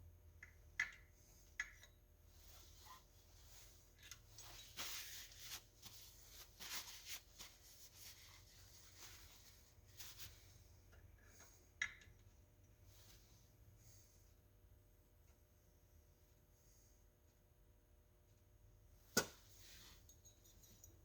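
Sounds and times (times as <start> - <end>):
small metal tools clinking: 20.0 - 21.0.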